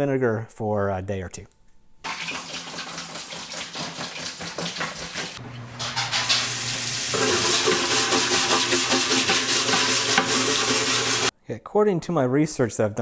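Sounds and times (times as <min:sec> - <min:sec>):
spray paint can hissing: 0:06.4 - 0:11.3.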